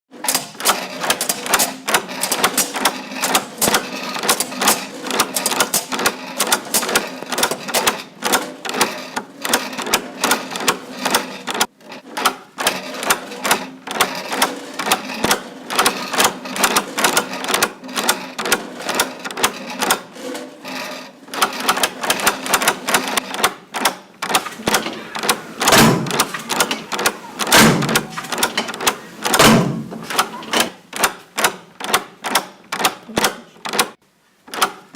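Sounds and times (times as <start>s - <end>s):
rapid mechanical clicking: 0.1s - 34.9s
heavy knocks: 24.4s - 30.3s.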